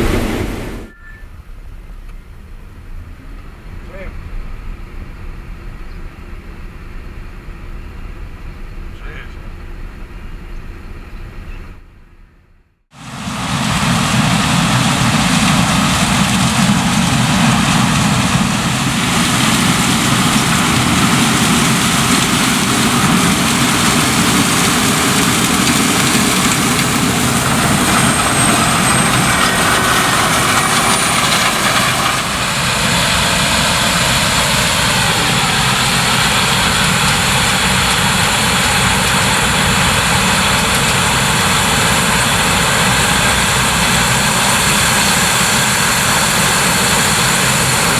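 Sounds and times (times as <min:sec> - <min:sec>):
combine harvester running: 0:00.0 - 0:01.0, 0:12.9 - 0:47.9.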